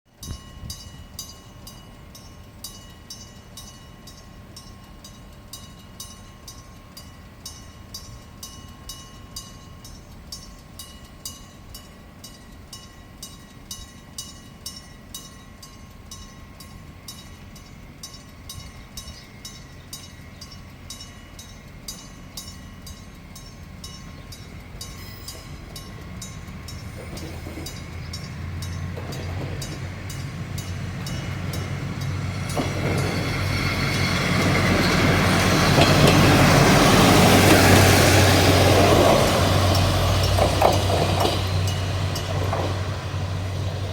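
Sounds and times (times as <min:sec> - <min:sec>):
diesel railcar engine and wheels: 0:00.1 - 0:43.9.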